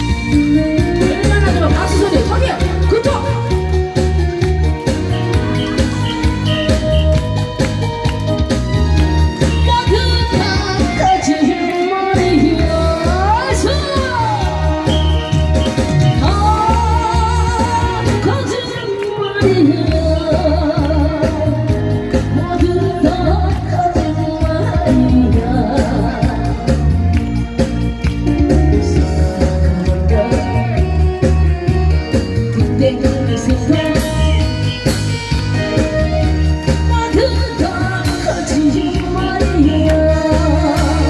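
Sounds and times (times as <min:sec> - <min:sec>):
amplified backing track: 0:00.0 - 0:41.0
person singing with vibrato: 0:09.6 - 0:21.7, 0:28.8 - 0:31.2, 0:36.8 - 0:41.0.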